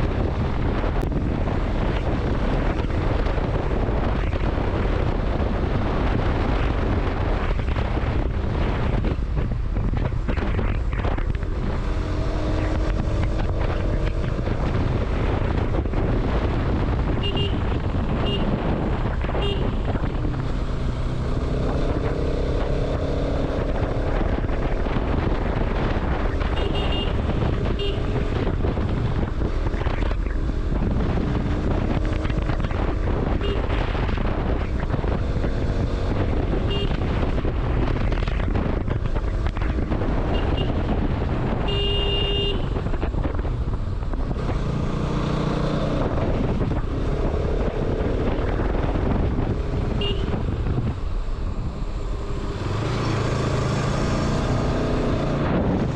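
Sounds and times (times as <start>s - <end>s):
motorcycle engine: 0.0s - 55.9s
wind buffeting microphone: 0.0s - 55.9s
horn toots: 17.2s - 18.6s, 19.3s - 19.9s, 26.5s - 28.4s, 36.6s - 37.2s, 41.6s - 42.9s, 49.9s - 50.4s.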